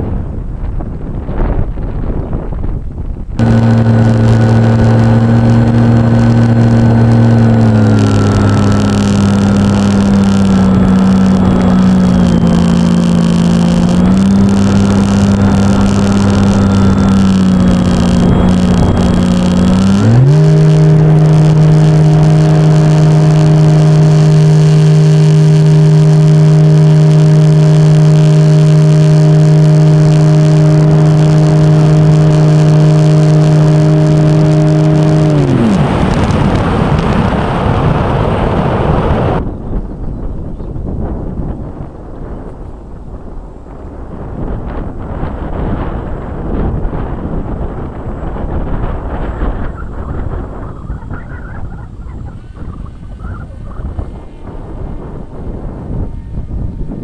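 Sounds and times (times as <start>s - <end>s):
wind buffeting microphone: 0.0s - 57.0s
model plane motor hum: 3.4s - 39.4s.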